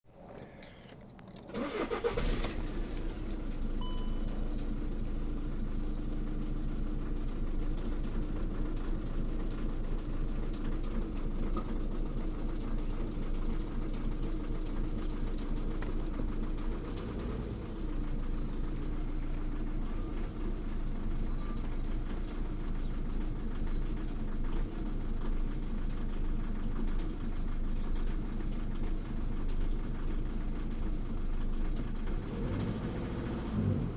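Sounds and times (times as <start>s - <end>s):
diesel engine cranking and idling: 0.1s - 33.9s.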